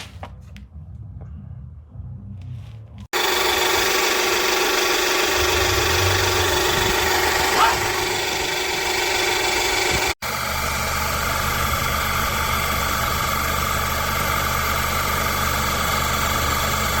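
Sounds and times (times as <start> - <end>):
motor humming and whining: 3.2 - 17.0.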